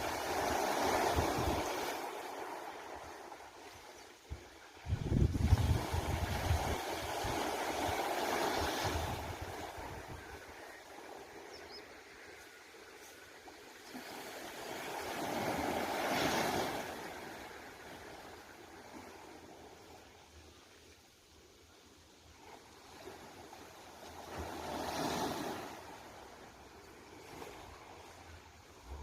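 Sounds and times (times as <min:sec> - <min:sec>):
waves washing on beach: 0:00.0 - 0:20.9, 0:22.3 - 0:29.0
wind rumble on microphone: 0:04.8 - 0:10.4.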